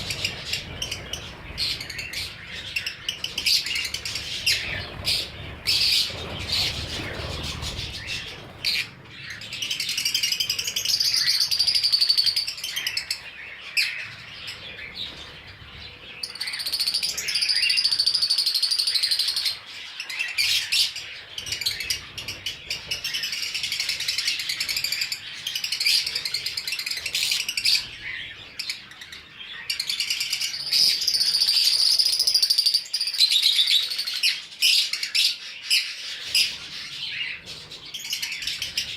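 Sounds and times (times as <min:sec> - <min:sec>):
parrots chirping and chattering: 0:00.0 - 0:38.9.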